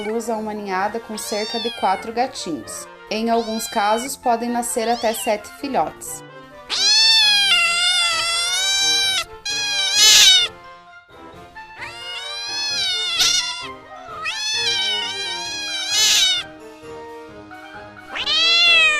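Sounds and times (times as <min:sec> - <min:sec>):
cat meowing: 0:01.0 - 0:02.2, 0:03.1 - 0:04.2, 0:04.8 - 0:05.4, 0:06.6 - 0:10.5, 0:11.8 - 0:16.6, 0:18.0 - 0:18.9.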